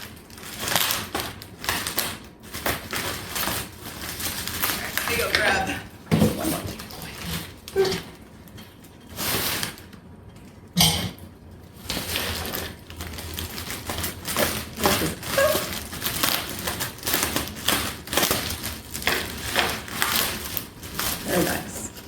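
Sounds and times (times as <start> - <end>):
cardboard and packing rustling: 0.0 - 10.6, 11.5 - 22.0.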